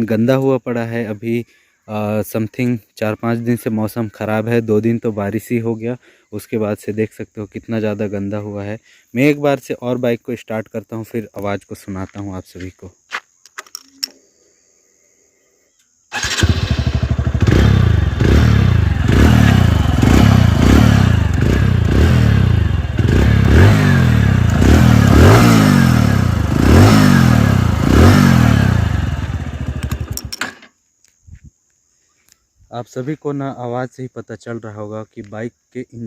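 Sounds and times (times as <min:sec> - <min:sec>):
motorcycle engine revving: 0:16.1 - 0:30.4
metallic engine clanking: 0:27.2 - 0:30.6.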